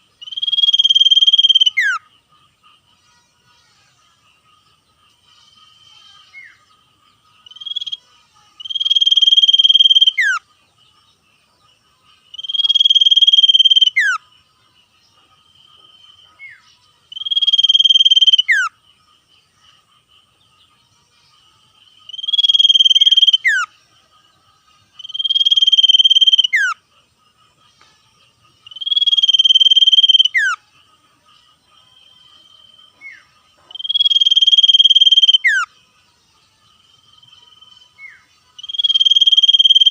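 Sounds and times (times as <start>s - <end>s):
bird buzzy trills: 0.0s - 11.2s, 11.9s - 35.8s, 36.4s - 39.9s.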